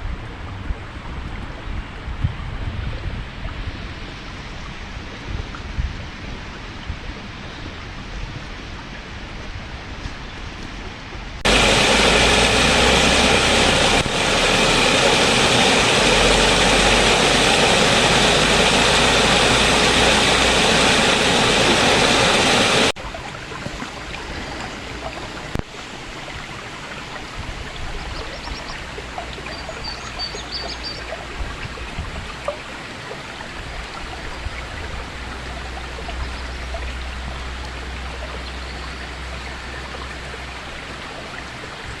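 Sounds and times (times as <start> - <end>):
water rushing over waterfall: 11.4 - 42.0.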